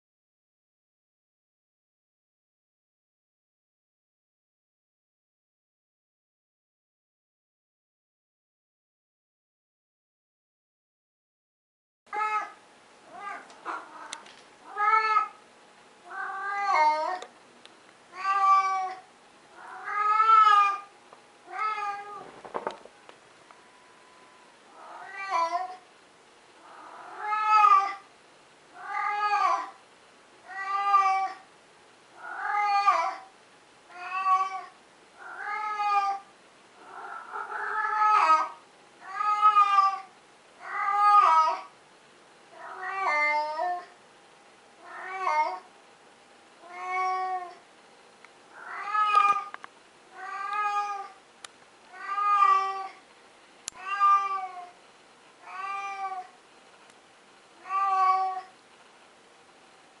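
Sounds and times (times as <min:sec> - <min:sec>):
cat meowing: 0:12.1 - 0:15.4, 0:16.1 - 0:17.3, 0:18.1 - 0:20.9, 0:21.5 - 0:22.3, 0:23.6 - 0:25.8, 0:26.9 - 0:28.1, 0:28.8 - 0:29.8, 0:30.5 - 0:31.4, 0:32.2 - 0:33.3, 0:33.9 - 0:41.7, 0:42.5 - 0:43.9, 0:44.8 - 0:45.7, 0:46.6 - 0:47.6, 0:48.6 - 0:51.2, 0:51.9 - 0:53.0, 0:53.7 - 0:54.8, 0:55.4 - 0:56.4, 0:57.6 - 0:58.5.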